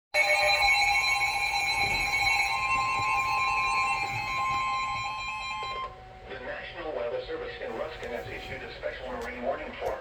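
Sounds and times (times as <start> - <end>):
steady electronic alert tone: 0.2 - 6.0.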